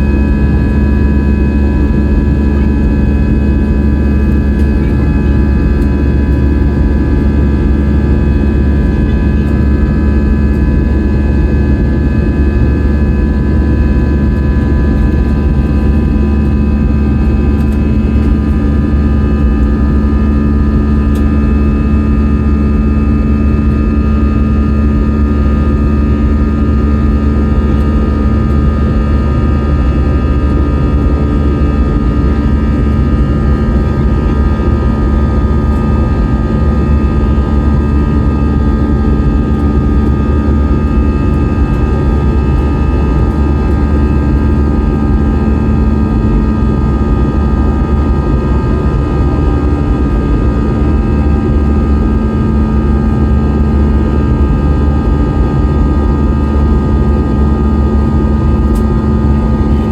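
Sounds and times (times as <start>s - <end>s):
airliner cabin engine rumble: 0.0s - 59.9s
constant hum: 0.0s - 59.9s.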